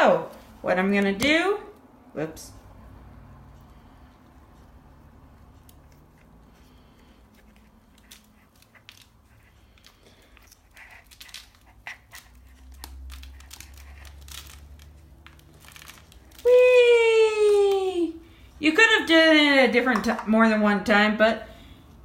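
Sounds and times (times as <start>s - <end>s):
plastic tube crinkling and clicking: 7.0s - 16.5s.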